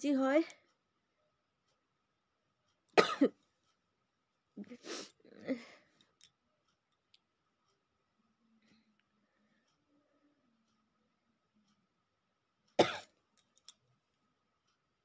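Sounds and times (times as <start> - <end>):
woman coughing breathily: 3.0 - 3.4, 12.8 - 13.1.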